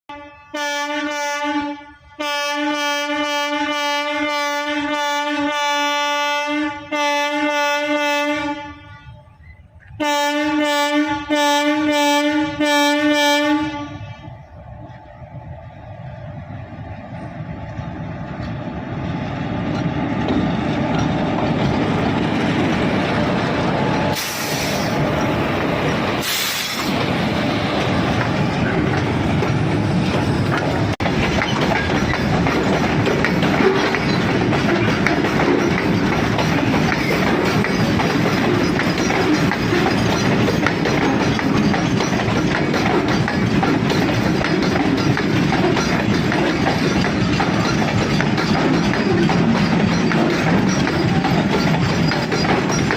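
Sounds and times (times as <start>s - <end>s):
train wheels clattering on rails: 16.0s - 52.9s
short hisses: 24.2s - 25.0s.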